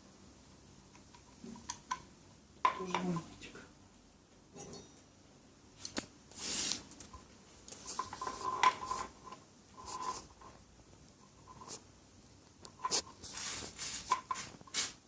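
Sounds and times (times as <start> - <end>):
metal tools clinking: 4.6 - 5.0
metal scrape: 7.8 - 10.6, 12.8 - 15.0.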